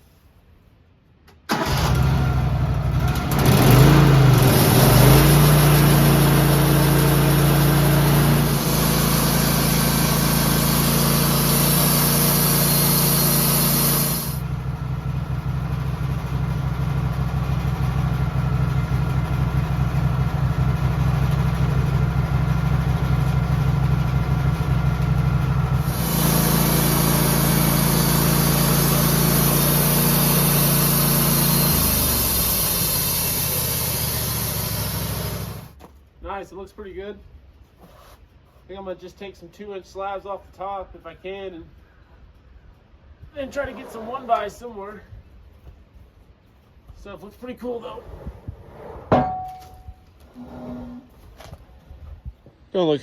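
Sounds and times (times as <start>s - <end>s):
sawmill engine running: 1.5s - 35.8s
high hiss: 10.5s - 14.4s, 25.8s - 35.6s.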